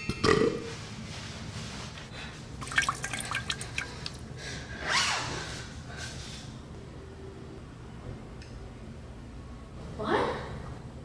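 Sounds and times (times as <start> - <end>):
water dripping in a bathtub: 2.6 - 4.3.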